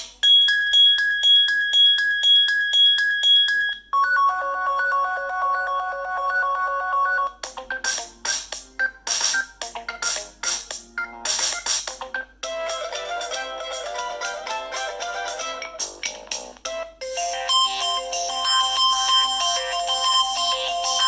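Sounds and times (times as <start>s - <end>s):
electronic phone ringtones: 0.2s - 8.1s, 17.0s - 21.0s.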